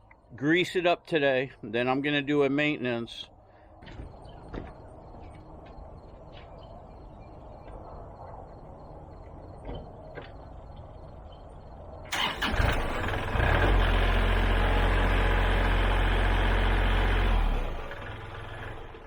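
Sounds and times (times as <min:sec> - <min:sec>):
tractor diesel engine: 0:12.1 - 0:19.0.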